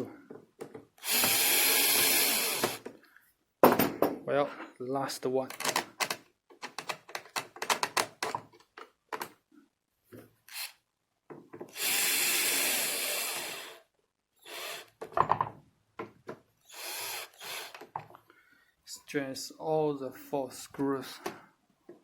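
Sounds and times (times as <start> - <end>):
power screwdriver driving screw: 1.0 - 2.8, 16.7 - 17.9
clicks and knocks of lock parts: 5.4 - 9.4.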